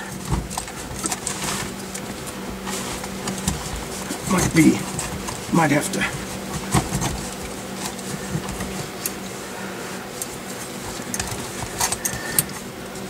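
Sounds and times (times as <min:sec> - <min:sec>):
low electrical hum: 0:00.0 - 0:13.0
wiring harness clicks and rustles: 0:00.0 - 0:13.0.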